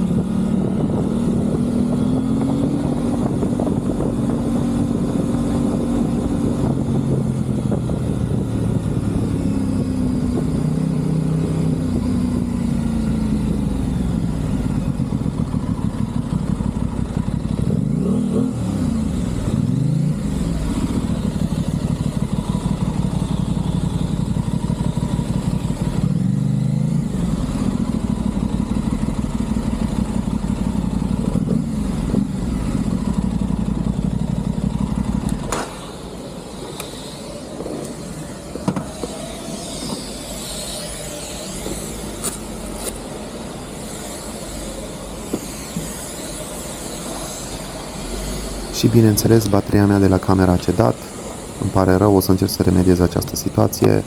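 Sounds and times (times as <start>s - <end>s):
motorcycle engine revving: 0.0s - 35.9s.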